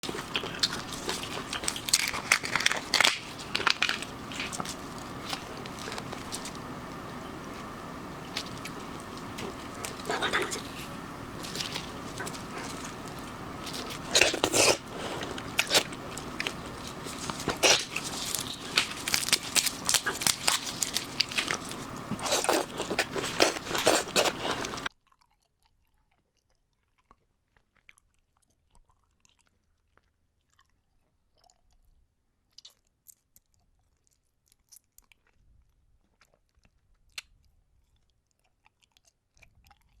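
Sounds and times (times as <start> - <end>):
chewing crunchy seafood: 0.0 - 24.9.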